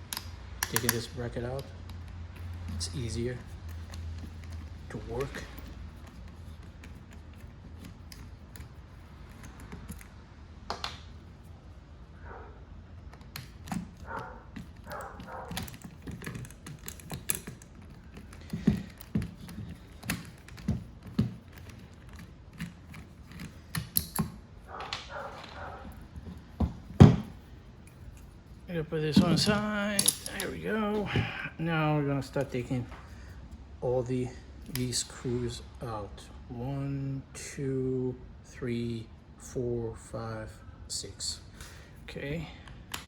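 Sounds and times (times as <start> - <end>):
screwdriver and metal parts clinking: 0.0 - 10.2, 13.0 - 31.4.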